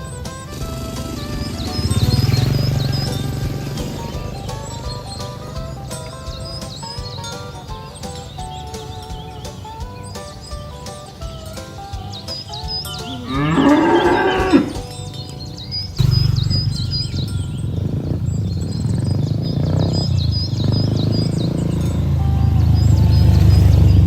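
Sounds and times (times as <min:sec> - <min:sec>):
small birds chirping: 0:00.0 - 0:24.0
cow mooing: 0:13.0 - 0:15.0.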